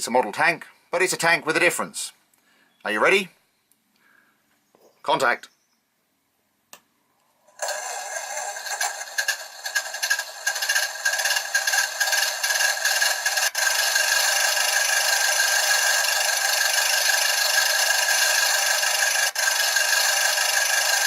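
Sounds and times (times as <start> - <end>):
tank engine sound effect: 7.6 - 21.0.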